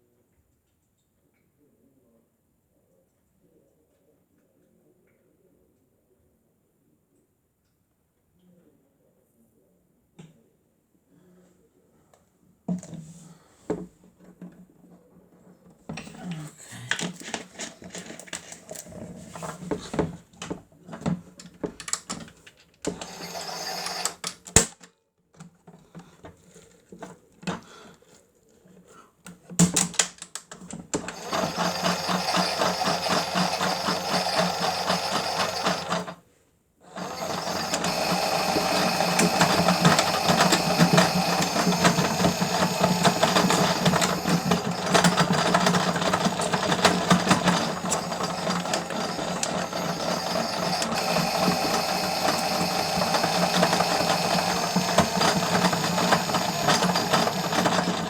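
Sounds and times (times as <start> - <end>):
toy washing machine motor whirring: 16.0 - 20.6, 21.4 - 24.8, 30.5 - 36.2, 36.8 - 58.0
clicks and knocks: 37.0 - 58.0.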